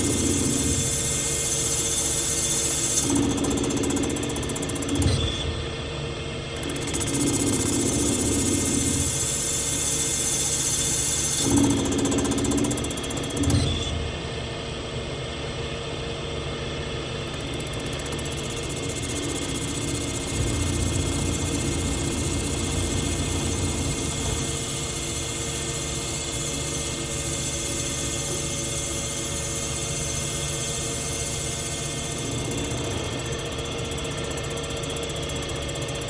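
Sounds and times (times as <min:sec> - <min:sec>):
cnc machine whirring: 0:00.0 - 0:14.7, 0:17.3 - 0:36.0.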